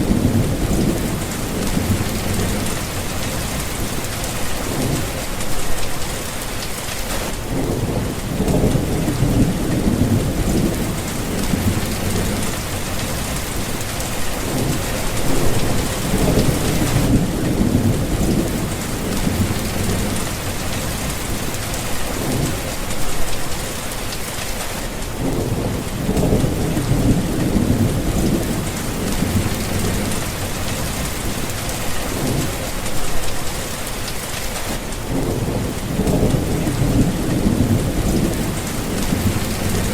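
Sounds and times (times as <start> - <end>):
rolling thunder: 0.0 - 6.1, 7.2 - 23.4, 25.2 - 33.3, 35.0 - 39.9
heavy rain: 0.0 - 39.9.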